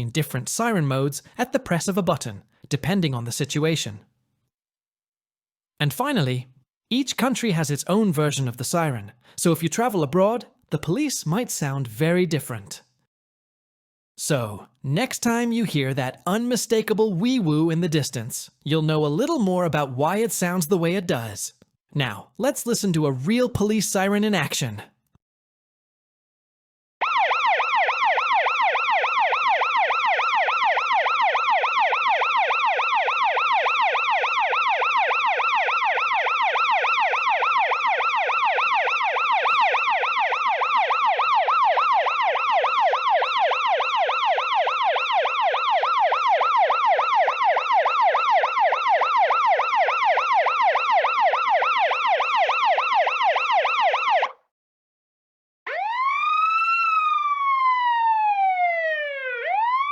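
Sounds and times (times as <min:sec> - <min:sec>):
police siren yelping: 0:27.0 - 0:54.4, 0:55.7 - 0:59.9.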